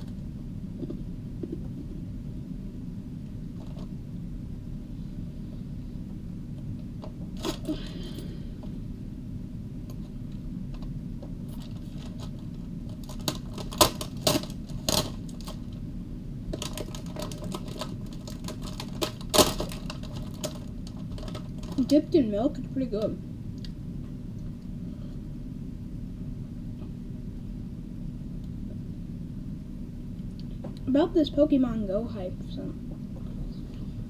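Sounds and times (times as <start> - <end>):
low hum: 0.0 - 34.0.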